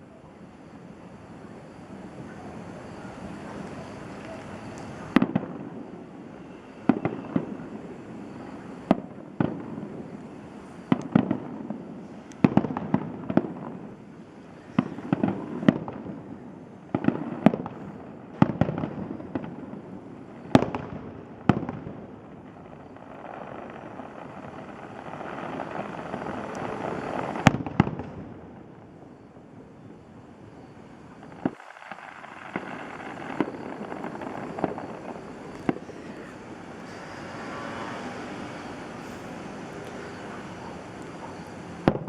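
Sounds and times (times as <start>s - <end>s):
fireworks bangs: 4.3s - 10.2s, 14.7s - 29.7s, 31.1s - 42.0s
rushing noise: 30.7s - 41.8s.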